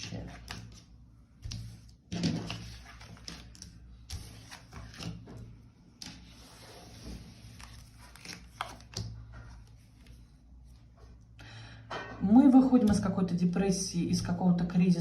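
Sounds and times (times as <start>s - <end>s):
cards rustling and clicking: 1.5s - 10.3s.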